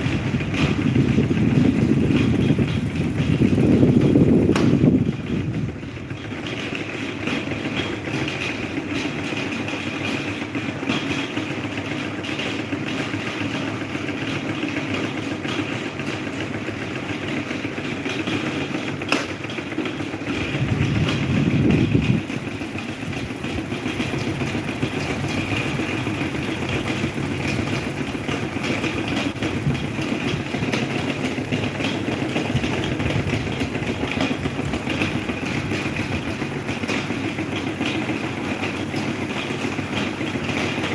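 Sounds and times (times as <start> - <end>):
electric fan whirring: 0.0 - 9.4, 18.0 - 40.9.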